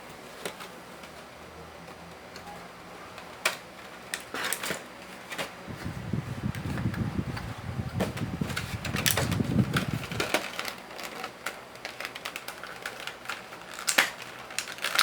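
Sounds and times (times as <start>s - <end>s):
toy packaging clicks and rustles: 8.4s - 15.0s.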